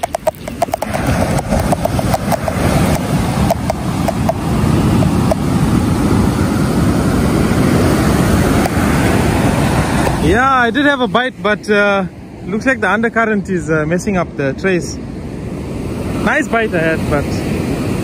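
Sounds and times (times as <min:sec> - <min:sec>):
fishing reel clicker ticking: 0:00.0 - 0:04.4
wind and surf rushing: 0:00.0 - 0:18.0.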